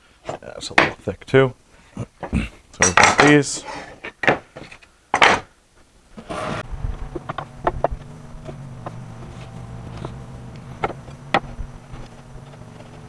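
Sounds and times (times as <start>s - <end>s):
steady low hum: 6.1s - 13.0s.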